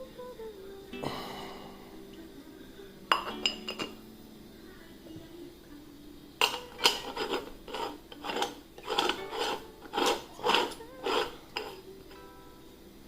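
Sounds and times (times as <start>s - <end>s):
rasping scraping strokes: 6.8s - 11.8s.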